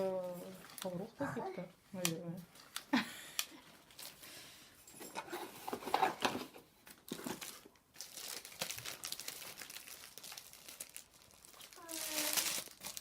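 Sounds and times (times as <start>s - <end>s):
packaging crinkling: 7.0s - 13.0s.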